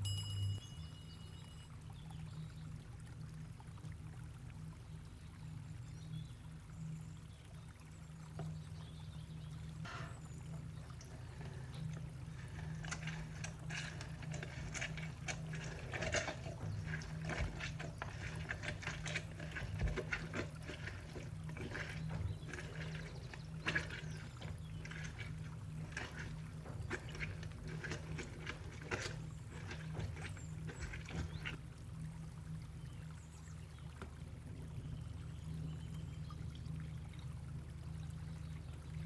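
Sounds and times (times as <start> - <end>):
liquid pouring: 9.7 - 32.5
utensils clicking and knocking: 10.8 - 31.6.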